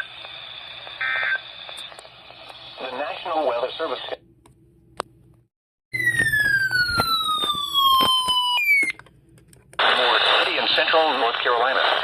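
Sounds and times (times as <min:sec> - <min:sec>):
high whistling tone gliding downward: 0:06.0 - 0:09.0.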